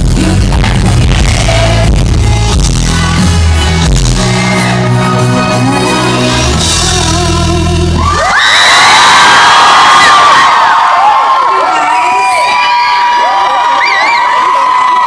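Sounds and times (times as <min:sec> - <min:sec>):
live band music: 0:00.0 - 0:08.2
person singing: 0:00.0 - 0:08.4
crowd screaming and cheering: 0:00.0 - 0:15.0.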